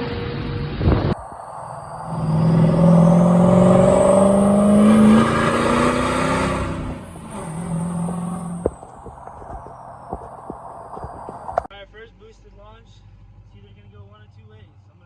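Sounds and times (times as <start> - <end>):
vehicle engine accelerating: 0.0 - 11.7.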